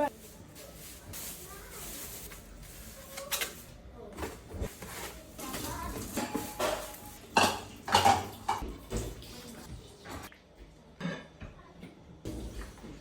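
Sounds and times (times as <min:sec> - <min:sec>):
kitchen utensils clattering: 0:00.0 - 0:10.3.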